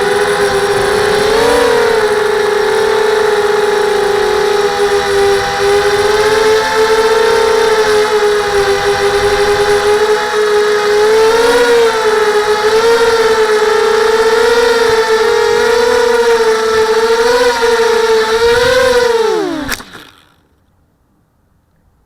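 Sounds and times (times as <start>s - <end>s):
quadcopter motors whining: 0.0s - 20.6s
click: 19.6s - 20.8s.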